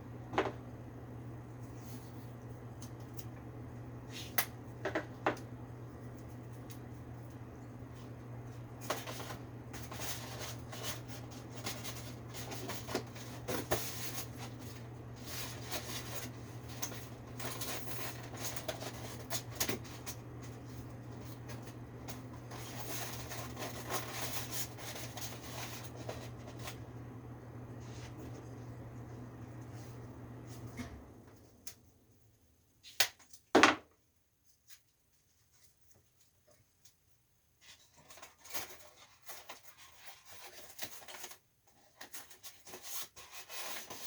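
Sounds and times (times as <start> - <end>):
steady low hum: 0.0 - 32.7
rustling and scraping of parts: 6.0 - 26.8, 34.4 - 44.0.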